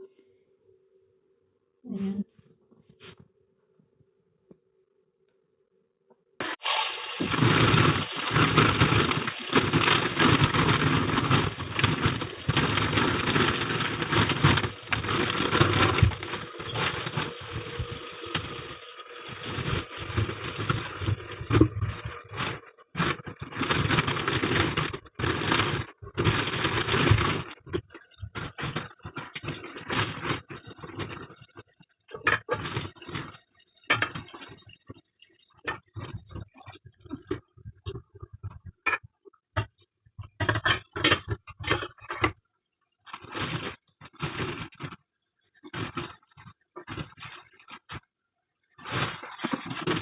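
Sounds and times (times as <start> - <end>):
water splashing at sink: 6.4 - 42.1
fruit handled in a sink: 43.0 - 50.0.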